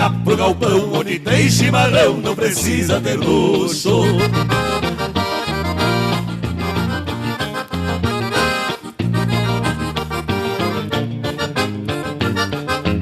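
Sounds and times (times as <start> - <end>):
accordion band music: 0.0 - 13.0.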